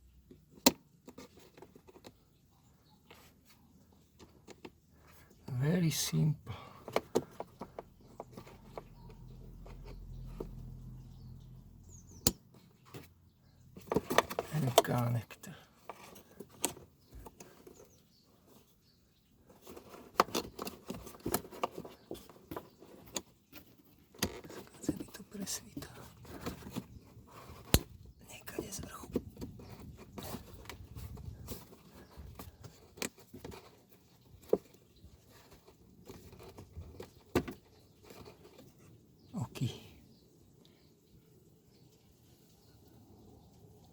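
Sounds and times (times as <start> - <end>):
clicks and knocks of car parts: 6.8 - 10.6, 27.6 - 28.0, 34.4 - 38.4.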